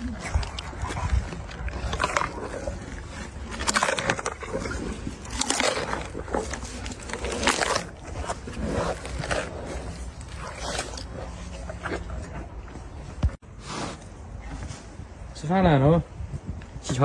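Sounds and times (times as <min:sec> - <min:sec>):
elephant chewing food: 0:00.0 - 0:15.3.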